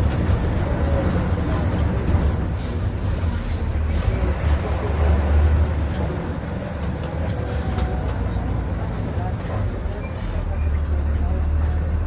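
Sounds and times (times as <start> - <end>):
bus diesel engine drone: 0.0 - 12.0.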